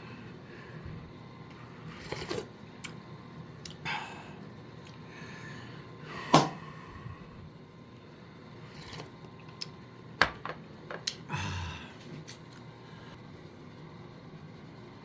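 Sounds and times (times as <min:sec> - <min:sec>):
knocks and clicks of objects handled: 0:10.2 - 0:11.2.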